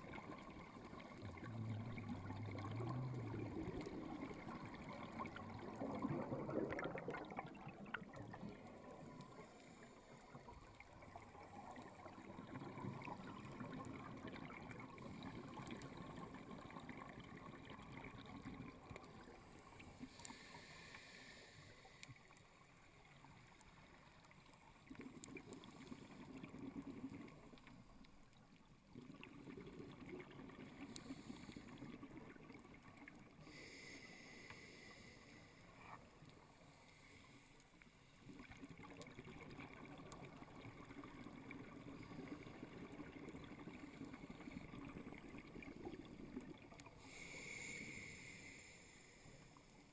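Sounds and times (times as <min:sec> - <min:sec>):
exhaled bubbles rushing: 0:00.0 - 0:09.6, 0:10.4 - 0:19.7
hissing regulator inhale: 0:20.0 - 0:22.4, 0:33.4 - 0:36.0, 0:47.0 - 0:49.9.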